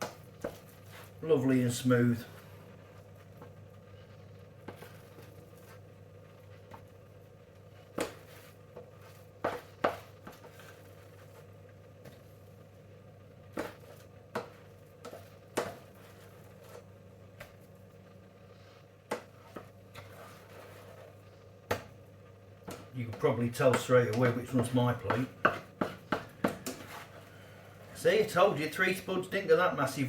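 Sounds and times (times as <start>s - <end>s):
faint steady hum: 0.0s - 30.0s.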